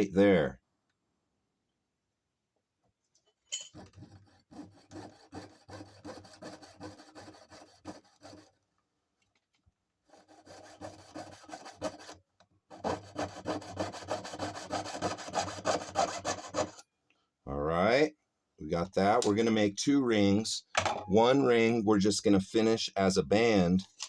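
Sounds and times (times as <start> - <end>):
saw cutting metal: 3.7 - 8.5, 10.1 - 16.8.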